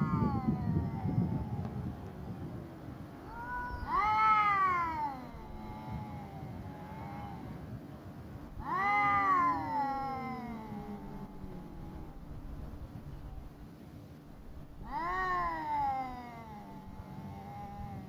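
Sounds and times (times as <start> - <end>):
cats yowling: 0.0 - 1.9, 3.2 - 7.7, 8.5 - 12.8, 14.8 - 18.0.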